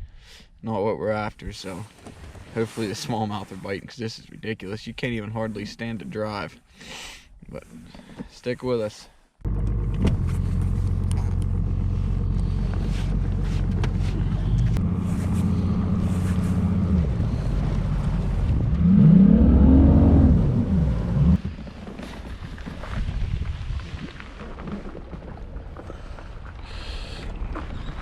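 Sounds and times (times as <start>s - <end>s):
engine droning: 9.5s - 21.4s.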